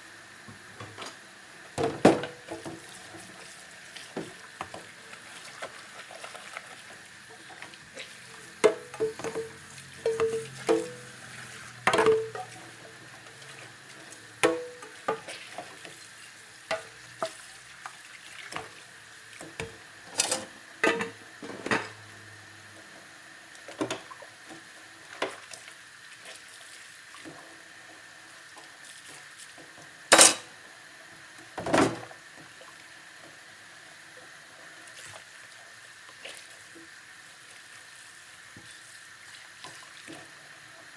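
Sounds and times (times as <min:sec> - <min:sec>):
dishes and cutlery clinking: 0:08.6 - 0:11.1, 0:11.9 - 0:12.6.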